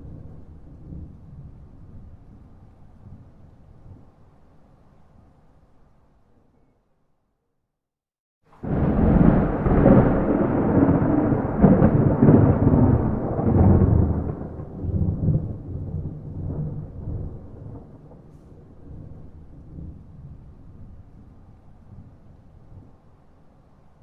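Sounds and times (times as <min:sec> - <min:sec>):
thunder crack and rumble: 0:00.0 - 0:04.1, 0:08.5 - 0:23.1.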